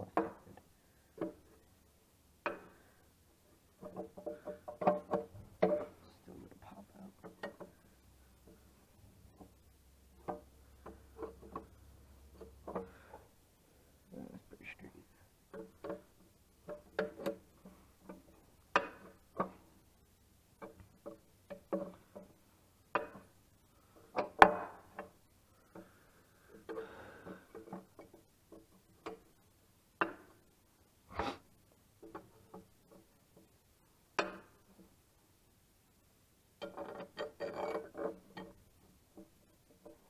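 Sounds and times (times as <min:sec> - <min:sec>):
metallic clinks and knocks: 0:03.8 - 0:06.1.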